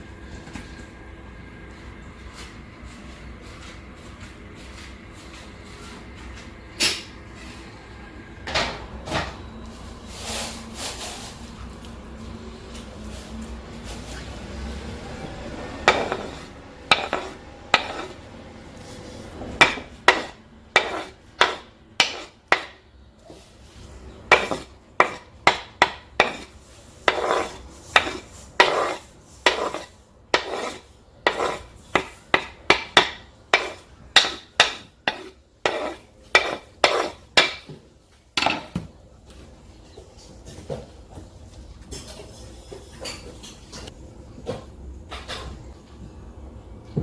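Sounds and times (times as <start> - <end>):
kitchen utensil knocking: 30.4 - 37.7.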